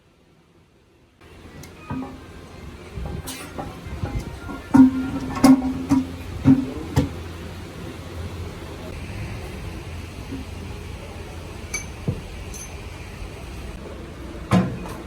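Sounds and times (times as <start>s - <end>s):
metal striking metal: 1.6s - 7.2s.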